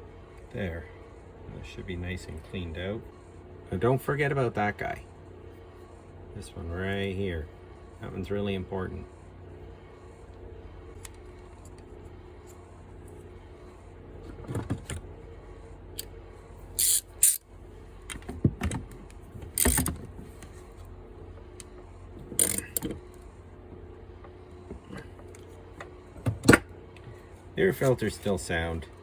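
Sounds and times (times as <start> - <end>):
steady low hum: 0.0 - 29.0
small parts clicking: 16.8 - 17.4, 19.6 - 19.9, 22.4 - 22.9.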